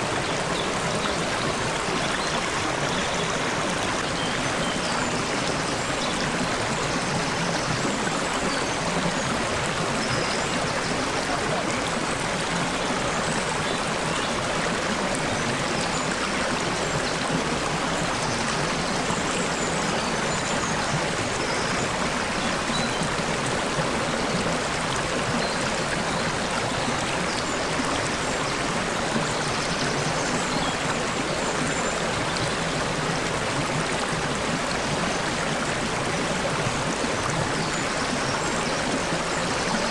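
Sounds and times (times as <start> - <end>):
water babbling over rocks: 0.0 - 39.9.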